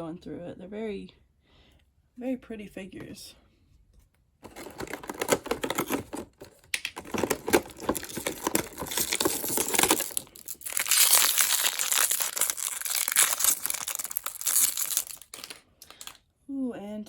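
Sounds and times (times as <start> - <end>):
plastic packaging crinkling and tearing: 4.4 - 16.2.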